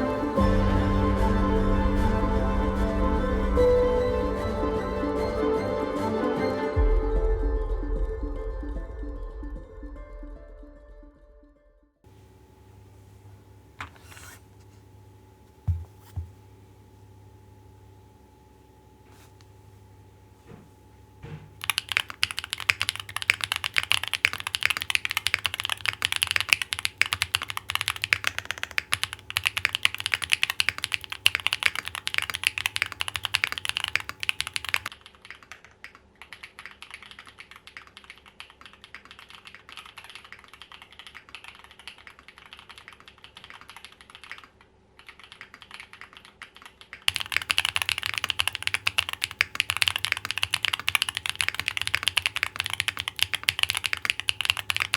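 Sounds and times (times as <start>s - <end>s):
mechanical keyboard typing: 21.5s - 34.9s, 47.1s - 54.9s.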